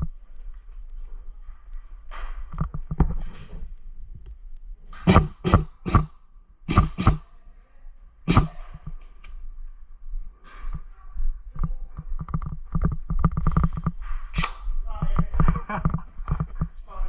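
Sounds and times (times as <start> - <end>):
airsoft guns firing: 5.0 - 6.1, 6.7 - 7.2, 8.3 - 8.6, 14.4 - 14.8.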